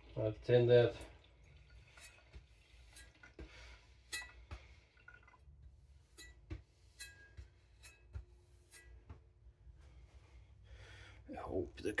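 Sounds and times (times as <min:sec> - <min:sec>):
faint clicks and clinks: 0:04.1 - 0:04.4.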